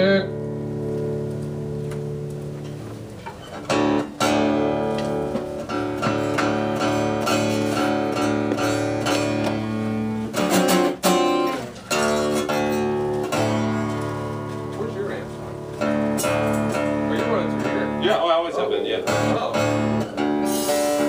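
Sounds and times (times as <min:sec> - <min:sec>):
acoustic guitar strumming chords: 0:00.0 - 0:21.0.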